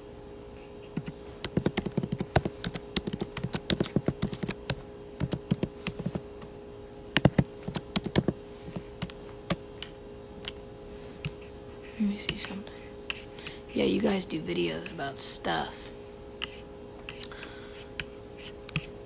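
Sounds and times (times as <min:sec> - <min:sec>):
faint steady hum: 0:00.0 - 0:19.0
keyboard typing clicks: 0:01.0 - 0:06.0, 0:07.2 - 0:08.3.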